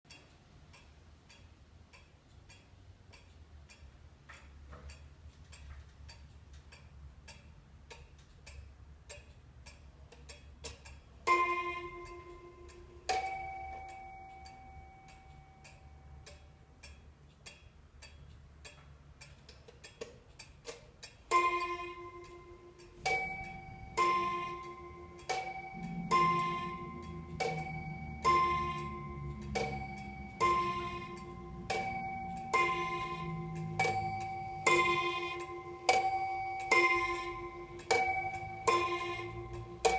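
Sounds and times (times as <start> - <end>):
pendulum clock ticking: 0.0 - 39.9
clock chime striking two notes: 11.3 - 15.0, 21.3 - 39.9.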